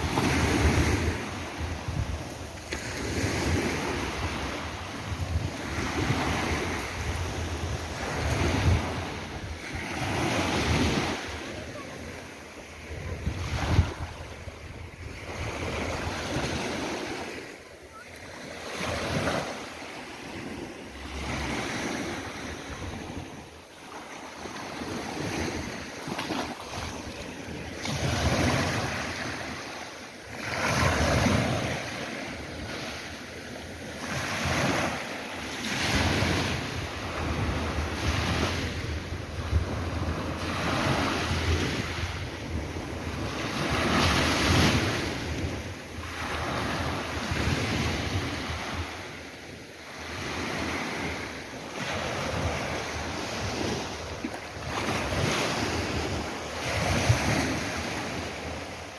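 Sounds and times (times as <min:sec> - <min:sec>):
wind rumbling on microphone: 0:00.0 - 0:11.4, 0:12.8 - 0:17.2, 0:35.9 - 0:49.2
sea waves breaking: 0:00.0 - 0:58.9.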